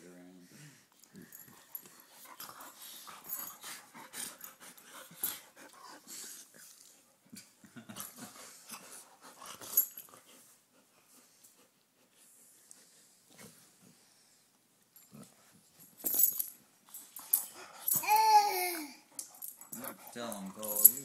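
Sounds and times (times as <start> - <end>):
dogs breathing noisily: 0.5 - 7.1, 8.0 - 14.5, 19.1 - 20.8.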